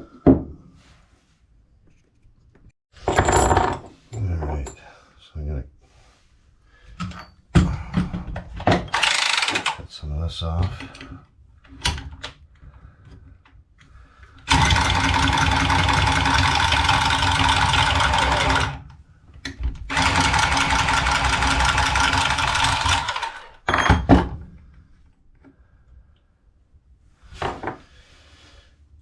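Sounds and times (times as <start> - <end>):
power saw cutting pipe: 8.9 - 9.8, 14.5 - 18.8, 19.9 - 23.6.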